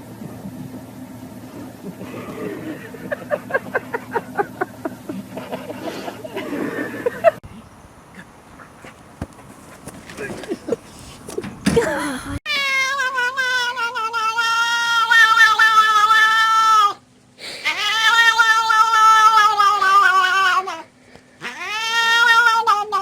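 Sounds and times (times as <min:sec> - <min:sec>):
scuffling noise: 0:08.5 - 0:11.9
cat yowling: 0:12.5 - 0:17.0, 0:17.6 - 0:23.0.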